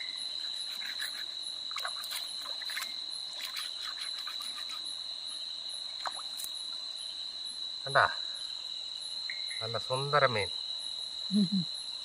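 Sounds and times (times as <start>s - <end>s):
crickets trilling: 0.0s - 12.0s
fish being scrubbed by hand: 0.4s - 4.8s.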